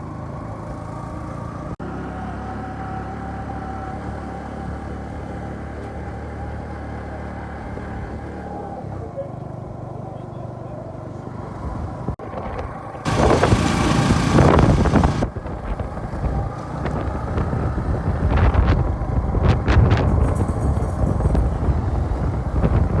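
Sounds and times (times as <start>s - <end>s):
motorcycle ride rumble: 0.0s - 23.0s
wind buffeting microphone: 12.1s - 23.0s.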